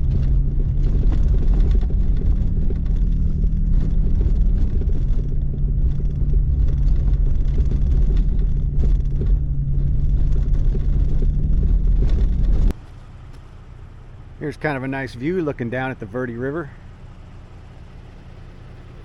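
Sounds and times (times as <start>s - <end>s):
tyre rumble on dirt road: 0.0s - 14.0s
low hum: 0.0s - 19.0s
pickup engine drone: 0.0s - 19.0s.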